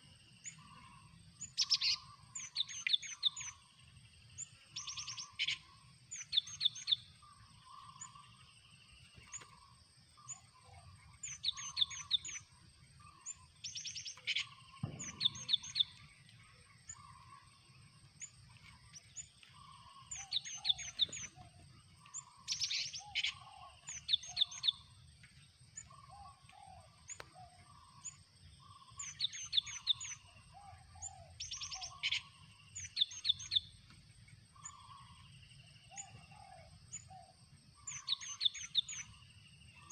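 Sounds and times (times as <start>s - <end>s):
short lower bird calls: 0.0s - 3.6s
birds chattering: 0.0s - 3.8s, 4.4s - 33.8s, 34.5s - 39.9s.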